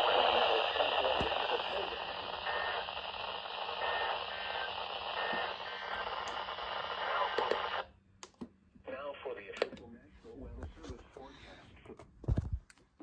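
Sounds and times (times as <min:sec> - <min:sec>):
high data tone bursts: 0:00.0 - 0:07.8
radio static hiss: 0:00.0 - 0:07.9.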